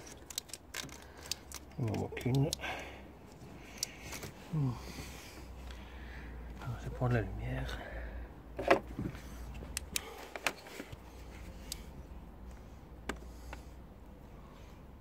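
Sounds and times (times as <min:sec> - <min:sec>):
clicks of objects being handled: 0:00.0 - 0:02.6, 0:08.6 - 0:11.9
faint steady hum: 0:00.0 - 0:15.0.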